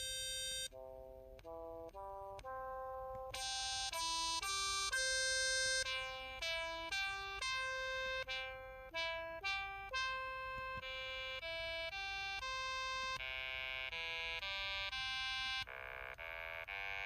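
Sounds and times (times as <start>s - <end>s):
phone keypad electronic notes: 0.0s - 17.0s.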